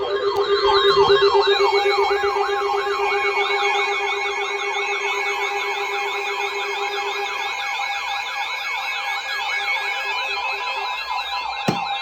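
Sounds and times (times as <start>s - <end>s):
sharp knock: 11.7s - 12.0s.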